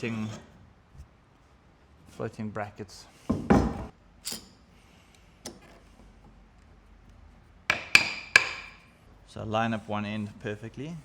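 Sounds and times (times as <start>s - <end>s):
sharp knocks with metallic ring: 7.7s - 8.8s.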